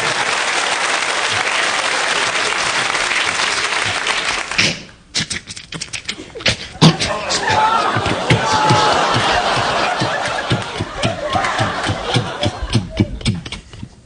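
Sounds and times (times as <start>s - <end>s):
audience applauding: 0.0s - 4.7s, 7.5s - 12.6s.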